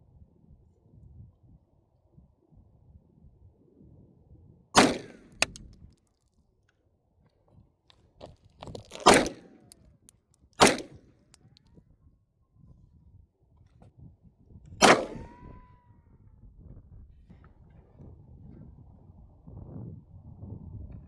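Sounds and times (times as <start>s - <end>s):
pistol shots: 4.8s - 5.8s, 8.8s - 9.5s, 10.6s - 11.0s, 14.8s - 15.4s.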